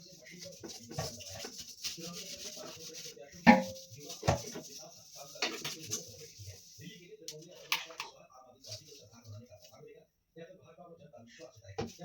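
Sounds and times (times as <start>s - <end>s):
scrubbing a fridge surface: 0.0s - 7.6s, 8.5s - 9.8s.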